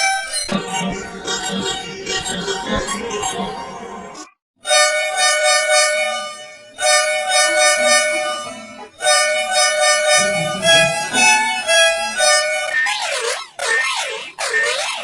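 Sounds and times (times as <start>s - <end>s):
bus horn blasts: 4.7s - 12.8s.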